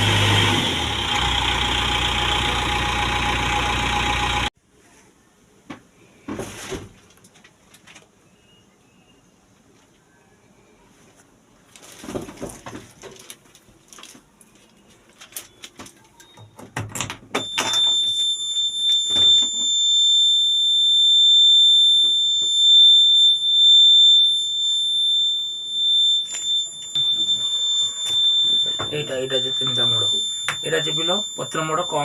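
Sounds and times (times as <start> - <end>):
high-pitched electronic warning buzzer: 17.4 - 32.0.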